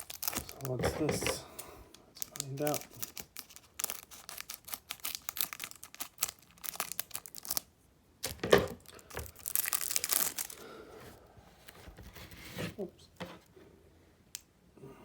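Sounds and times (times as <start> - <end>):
foil wrapper tearing and crinkling: 0.0 - 1.0, 2.2 - 10.6.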